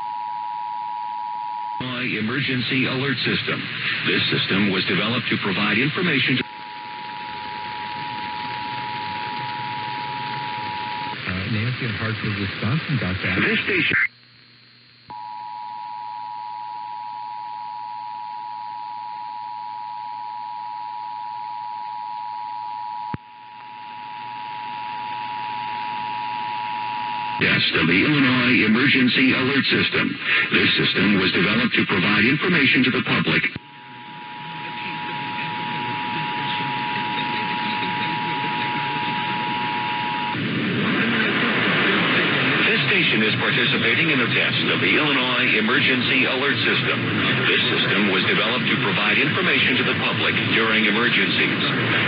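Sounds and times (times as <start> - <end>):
radio static hiss: 1.8 - 52.0
background hiss: 1.9 - 15.1.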